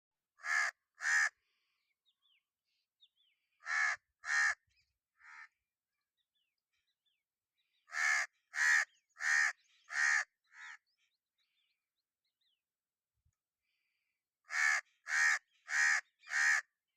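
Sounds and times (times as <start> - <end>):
crow cawing: 0.4 - 1.5, 3.6 - 5.6, 7.9 - 10.9, 14.5 - 16.8
small birds chirping: 1.1 - 12.8, 13.6 - 16.9.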